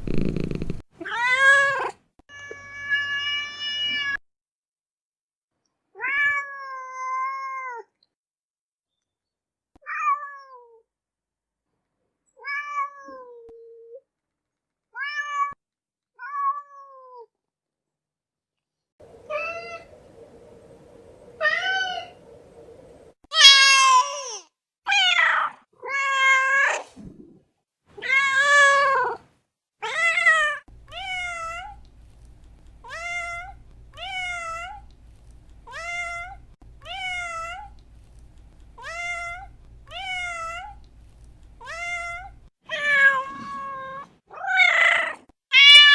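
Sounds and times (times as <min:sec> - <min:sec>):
cats meowing: 0:19.0 - 0:20.1, 0:35.7 - 0:37.8, 0:41.6 - 0:45.9
low hum: 0:19.0 - 0:23.2.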